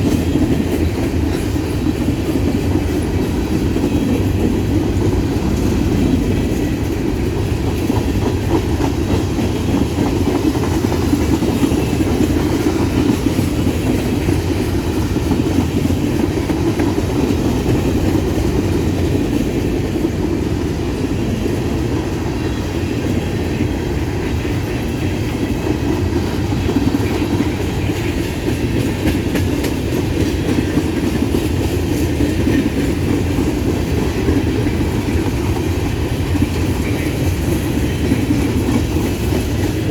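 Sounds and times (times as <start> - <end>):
freight train cars rolling: 0.0 - 39.9
wheels clicking over rail joints: 0.0 - 39.9.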